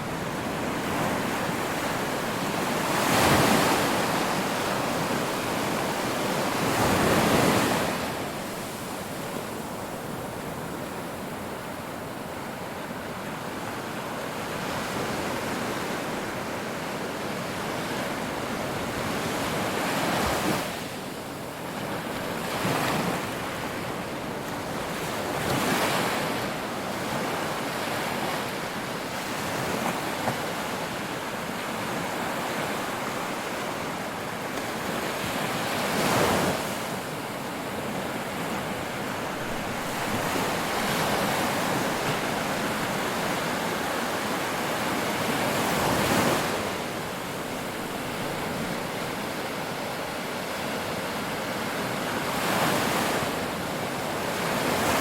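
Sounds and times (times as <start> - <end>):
ocean waves crashing on shore: 0.0 - 55.0.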